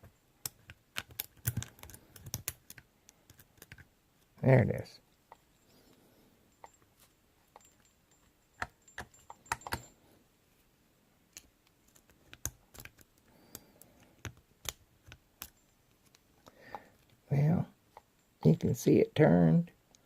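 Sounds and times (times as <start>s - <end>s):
lock picks clicking in padlock: 0.4s - 3.8s, 8.6s - 10.0s.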